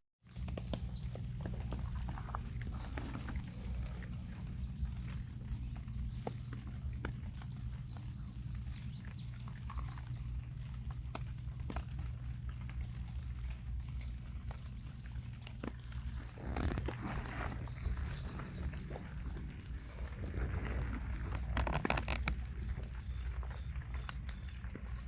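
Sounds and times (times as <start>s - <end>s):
rabbits chewing: 0.2s - 25.0s
rustling: 0.4s - 6.7s, 15.0s - 25.0s.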